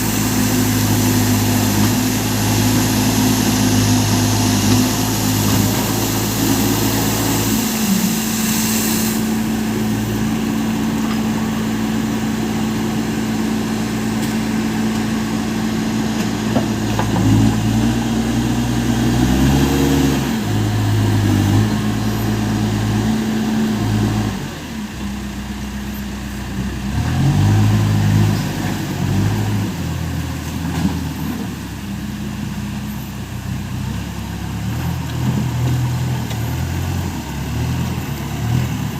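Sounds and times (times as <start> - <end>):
hiss: 0.0 - 10.0
diesel engine revving: 0.0 - 38.9.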